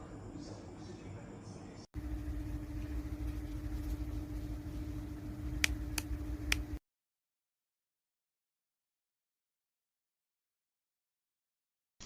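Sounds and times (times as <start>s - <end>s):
motor humming: 2.0s - 6.8s
sharp clicks: 5.5s - 6.8s.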